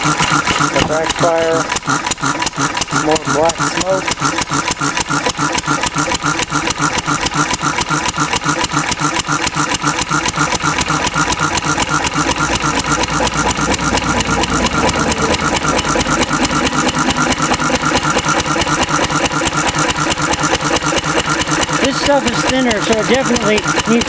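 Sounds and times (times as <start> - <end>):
stationary engine running: 0.0 - 24.0.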